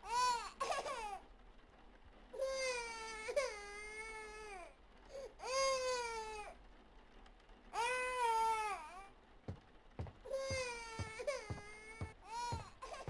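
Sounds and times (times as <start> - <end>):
baby crying: 2.4 - 6.5, 10.0 - 13.0.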